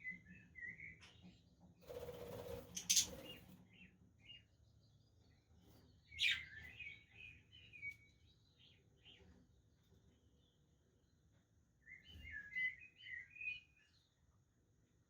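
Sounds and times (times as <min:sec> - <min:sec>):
budgerigars chirping: 0:02.8 - 0:03.4.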